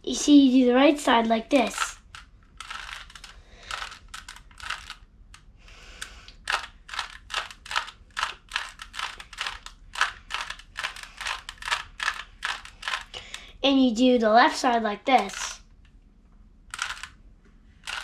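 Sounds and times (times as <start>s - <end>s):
puzzle cube layers clicking: 1.5s - 13.5s, 15.1s - 15.6s, 16.7s - 17.2s.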